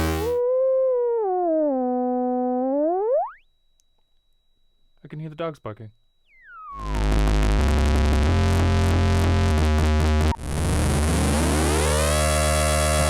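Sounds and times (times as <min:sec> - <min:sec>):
synthesizer bass line: 0:00.0 - 0:00.5, 0:06.4 - 0:13.0
synthesizer note gliding upward: 0:06.4 - 0:13.0.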